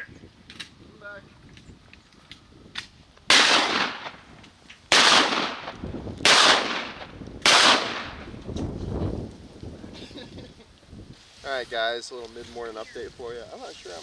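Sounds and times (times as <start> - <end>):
shotgun blasts: 3.3 - 4.2, 4.9 - 8.3.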